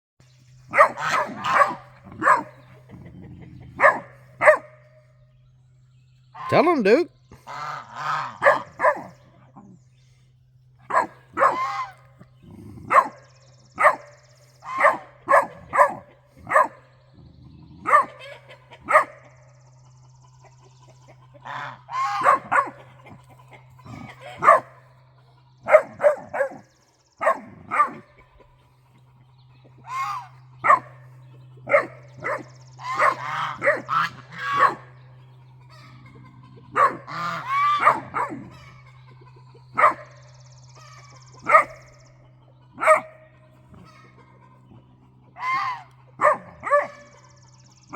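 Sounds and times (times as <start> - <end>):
geese honking: 0.4 - 5.3, 6.3 - 10.2, 10.8 - 47.9
puppy barking: 0.7 - 4.9, 7.5 - 9.8, 10.8 - 12.0, 12.6 - 19.4, 21.4 - 23.2, 23.8 - 24.9, 25.6 - 28.5, 29.9 - 35.0, 36.3 - 38.9, 39.7 - 40.4, 41.4 - 42.0, 42.7 - 44.2, 45.4 - 47.3.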